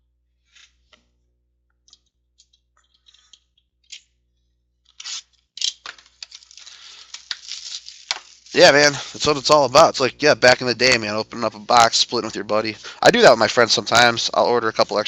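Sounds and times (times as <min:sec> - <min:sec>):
plastic wrap crinkling and tearing: 0:05.0 - 0:09.0.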